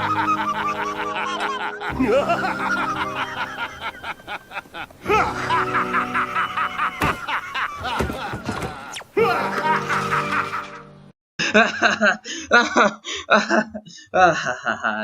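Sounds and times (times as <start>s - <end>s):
dramatic background music: 0.0s - 3.5s
man's menacing cartoon laugh: 0.0s - 15.0s.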